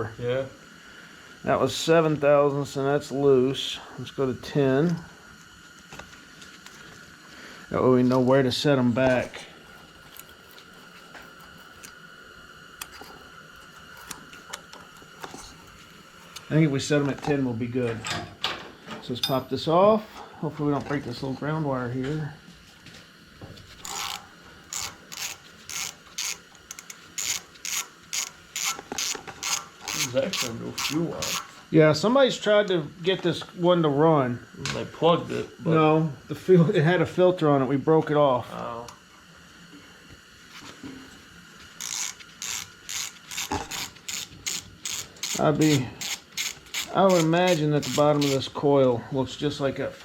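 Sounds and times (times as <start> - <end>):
ratchet wrench clicking: 23.8 - 31.5, 41.8 - 48.4.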